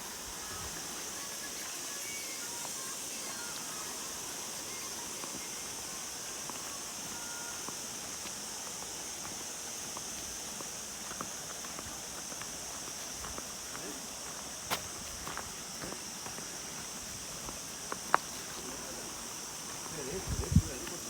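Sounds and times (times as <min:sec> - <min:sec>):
high-pitched outdoor hiss: 0:00.0 - 0:21.0
footsteps on rocky trail: 0:00.1 - 0:21.0.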